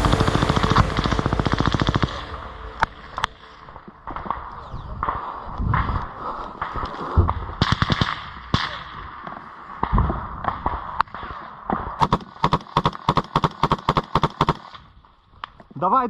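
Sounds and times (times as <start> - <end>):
automatic gunfire: 7.6 - 9.0, 10.5 - 14.8.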